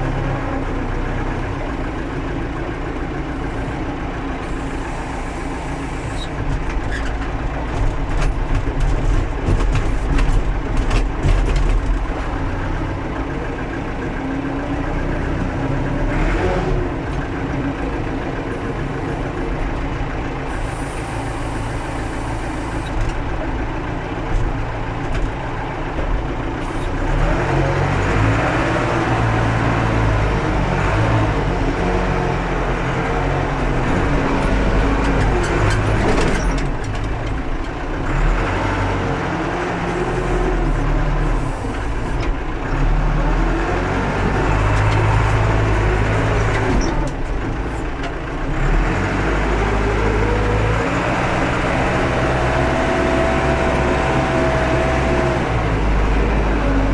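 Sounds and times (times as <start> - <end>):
backhoe diesel engine revving: 0.0 - 56.9
knocks and clanks: 7.7 - 12.1.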